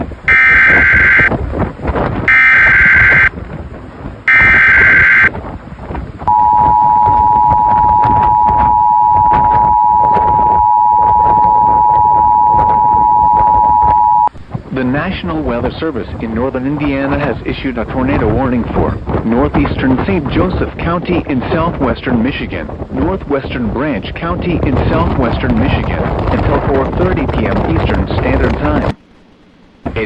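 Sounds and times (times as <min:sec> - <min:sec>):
two-tone attention signal: 0:00.3 - 0:01.3, 0:02.3 - 0:03.3, 0:04.3 - 0:05.3, 0:06.3 - 0:14.3
warbling data screech: 0:00.3 - 0:01.3, 0:02.3 - 0:03.3, 0:04.3 - 0:05.3.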